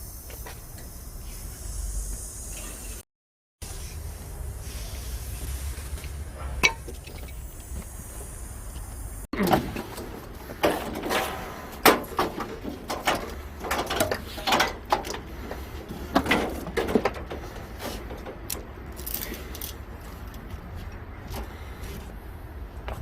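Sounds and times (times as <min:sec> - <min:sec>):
tools and metal parts clattering: 0:09.6 - 0:21.5.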